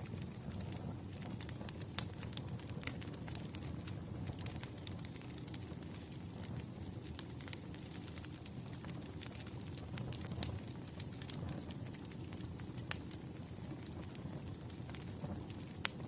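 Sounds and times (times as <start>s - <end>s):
wood fire crackling: 0.0s - 16.0s.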